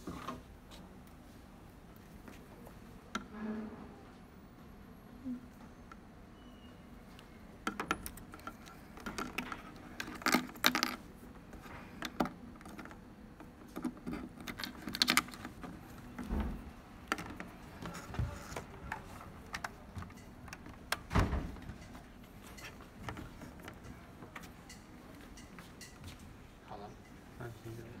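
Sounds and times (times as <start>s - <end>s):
metallic clicks and rattles: 7.7s - 11.0s.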